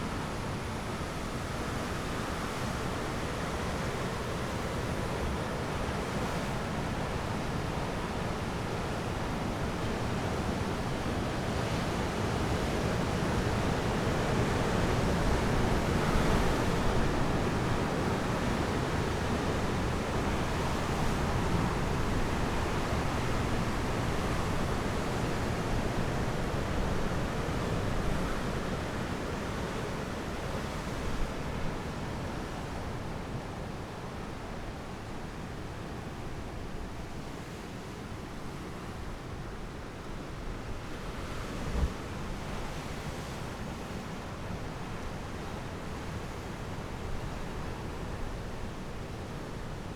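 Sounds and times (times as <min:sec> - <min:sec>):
wind: 0:00.0 - 0:49.9.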